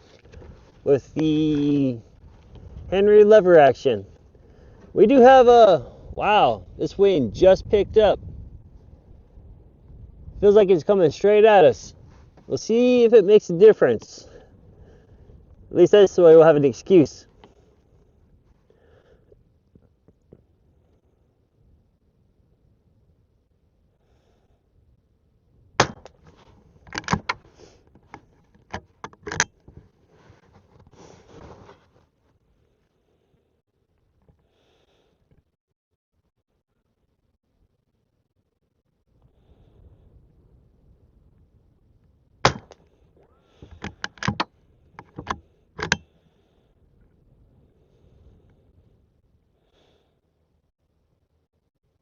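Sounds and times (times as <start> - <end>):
metallic clacks of rifle lever: 25.8 - 29.9, 43.6 - 46.1.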